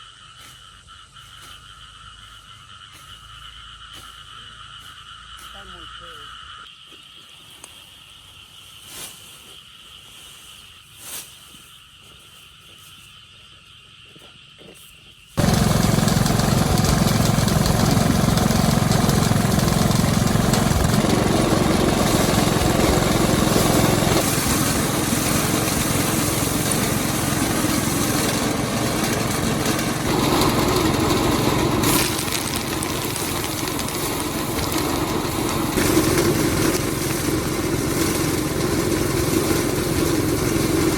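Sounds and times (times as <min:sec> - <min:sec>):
small engine running: 0:15.4 - 0:40.9.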